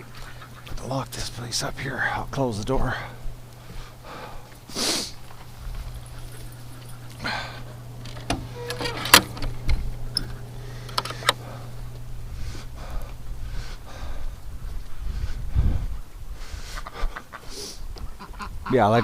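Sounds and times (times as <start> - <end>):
steady low hum: 0.0 - 19.0
door latch clinking: 8.0 - 11.4.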